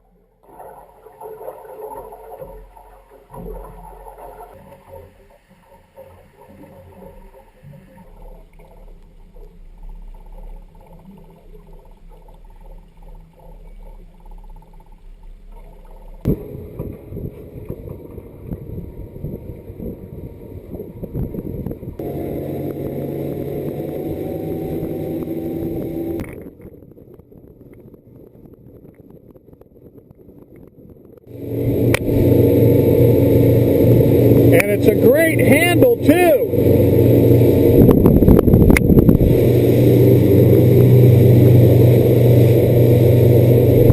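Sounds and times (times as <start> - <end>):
water noise: 0.0 - 43.9
steady engine tone: 16.2 - 26.6, 31.3 - 43.9
boat motor running: 16.3 - 26.7, 31.3 - 43.9
wind noise: 16.3 - 43.9.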